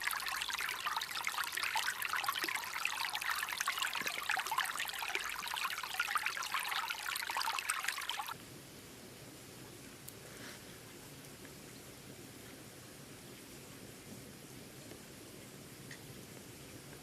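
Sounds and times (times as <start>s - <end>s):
water trickling and splashing: 0.0s - 8.4s
faint hiss: 0.0s - 17.0s.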